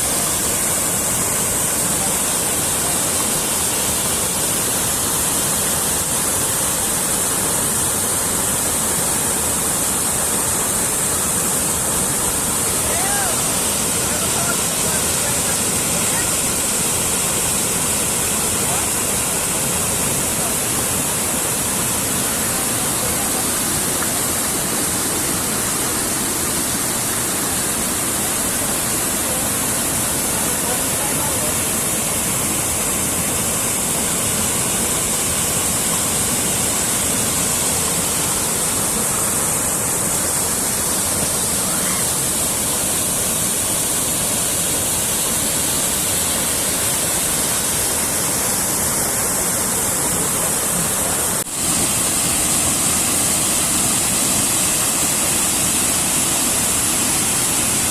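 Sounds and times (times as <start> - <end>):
waterfall roaring: 0.0 - 57.9.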